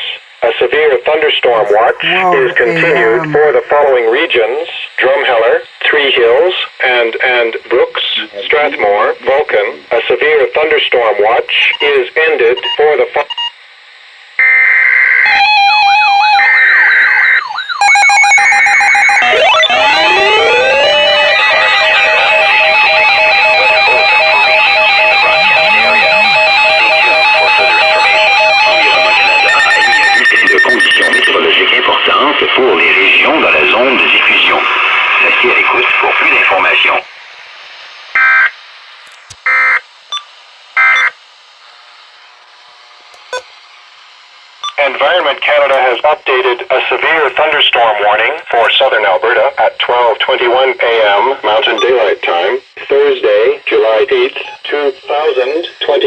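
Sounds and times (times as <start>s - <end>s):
harsh steady alert tone: 1.7s - 3.6s, 19.1s - 31.4s
electronic data squawks: 17.5s - 31.4s, 54.4s - 55.7s
radio hiss: 23.5s - 28.0s, 31.3s - 37.1s, 44.8s - 56.0s
synthesized beeps: 29.5s - 31.4s.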